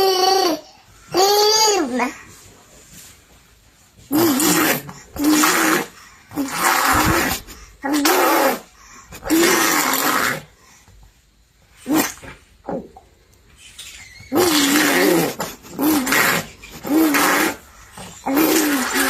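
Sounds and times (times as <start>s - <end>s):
animal growling calls: 4.1s - 10.6s, 13.8s - 19.0s.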